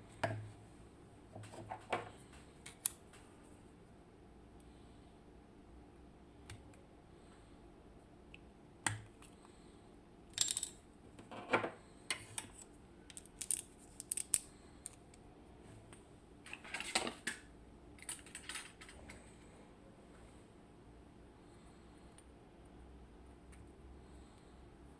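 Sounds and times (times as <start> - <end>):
metal lock parts clicking and scraping: 12.4 - 15.0.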